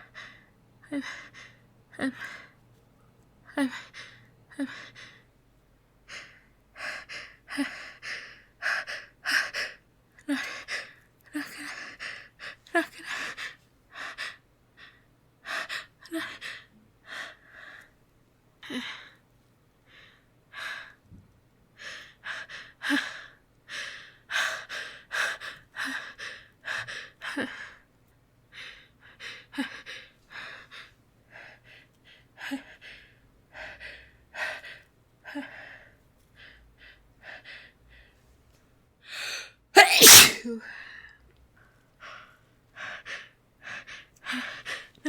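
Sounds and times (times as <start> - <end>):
woman gasping before sneeze: 39.8 - 40.6.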